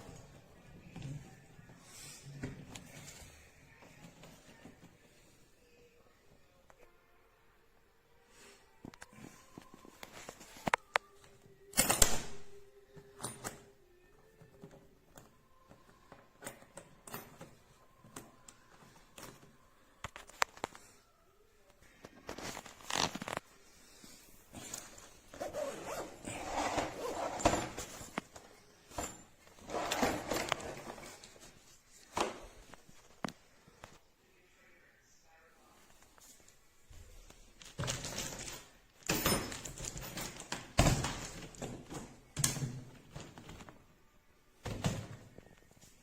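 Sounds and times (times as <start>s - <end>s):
suitcase zipper pulled: 25.3s - 28.0s, 29.6s - 30.9s.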